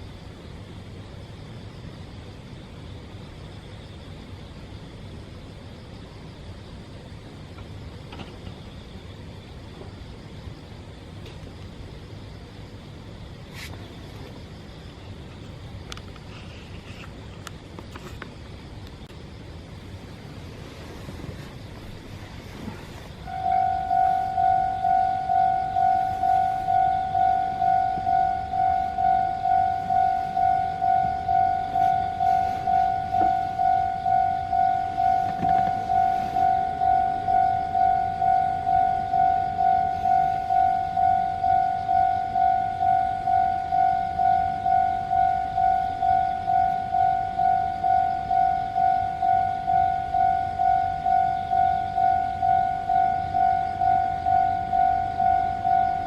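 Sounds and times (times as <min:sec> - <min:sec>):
level crossing bell ringing: 0:23.3 - 0:56.0.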